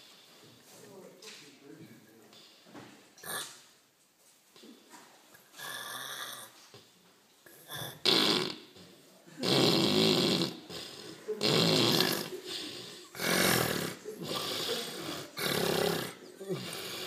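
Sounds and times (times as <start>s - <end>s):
man snoring loudly: 9.4s - 10.8s, 11.4s - 17.0s.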